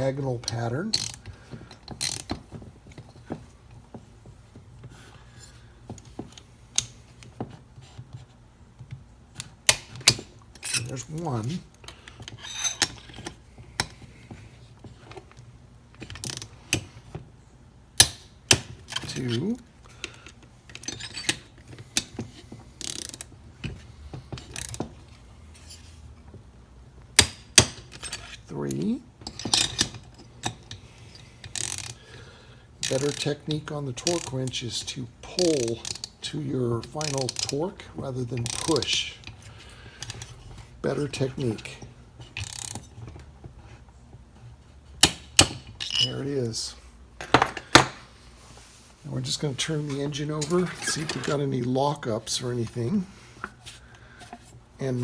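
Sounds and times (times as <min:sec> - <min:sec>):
wrench tapping on bolts: 0:00.4 - 0:02.4, 0:22.0 - 0:23.3, 0:36.8 - 0:37.6
torque wrench ratchet clicking: 0:00.9 - 0:01.2, 0:22.8 - 0:23.3, 0:31.5 - 0:32.0, 0:32.8 - 0:33.4, 0:35.5 - 0:36.2, 0:37.0 - 0:37.6, 0:42.4 - 0:42.8
torque wrench click: 0:31.5 - 0:32.0.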